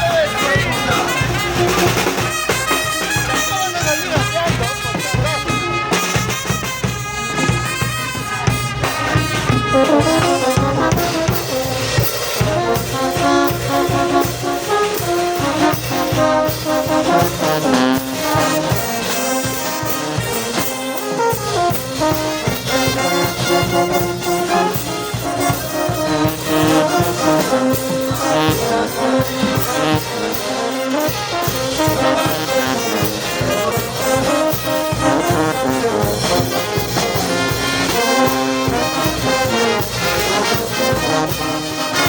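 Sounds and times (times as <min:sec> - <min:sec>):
brass band playing: 0:00.0 - 0:42.0.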